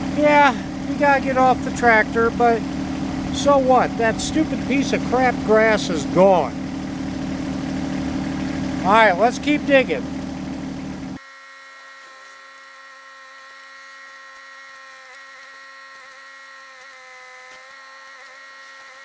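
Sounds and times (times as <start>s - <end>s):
diesel tractor engine running: 0.0s - 11.2s
steady multi-tone whine: 0.0s - 19.0s.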